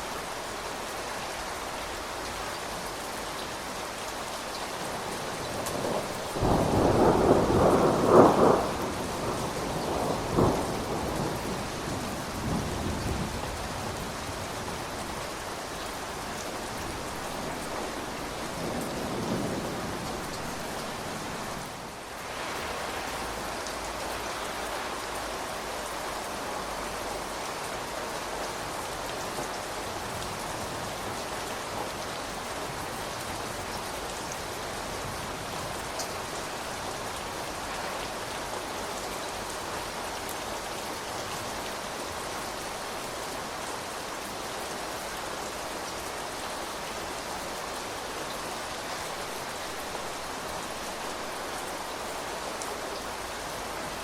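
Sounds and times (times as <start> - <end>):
steady rain: 0.0 - 54.0
thunder rumbling: 5.4 - 14.0.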